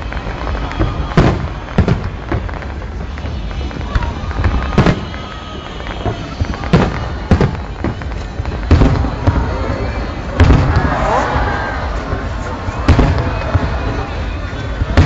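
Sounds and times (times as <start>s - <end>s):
firework bangs: 0.0s - 15.0s.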